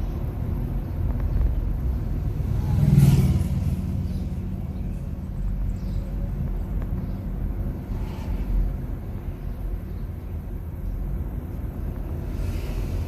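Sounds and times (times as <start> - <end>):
road and tyre rumble: 0.0 - 13.0.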